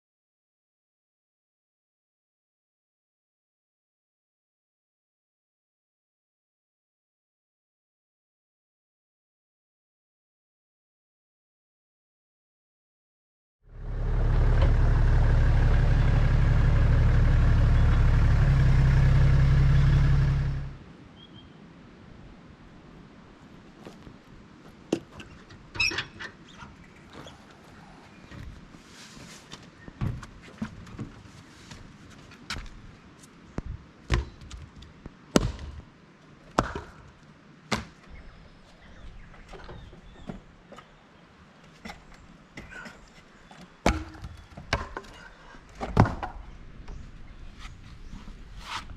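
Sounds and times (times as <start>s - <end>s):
vehicle engine and road drone: 13.7s - 20.9s
faint bird chirp: 21.1s - 21.6s, 25.3s - 28.5s, 38.0s - 41.3s.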